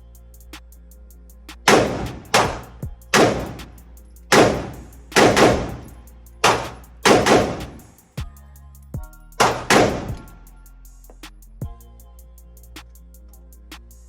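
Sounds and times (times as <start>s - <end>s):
rifle shots echoing: 1.7s - 7.9s, 9.4s - 10.3s.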